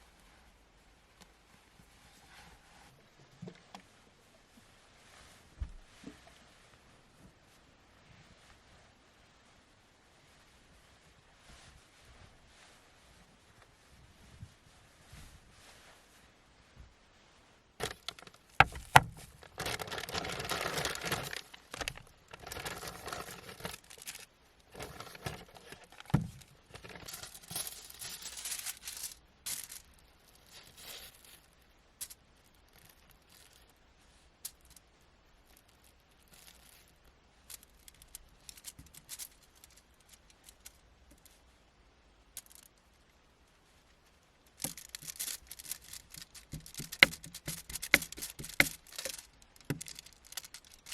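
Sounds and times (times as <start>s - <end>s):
rustling and crinkling handling: 0.0s - 50.9s
sharp clicks and knocks: 17.8s - 22.8s, 44.6s - 50.9s.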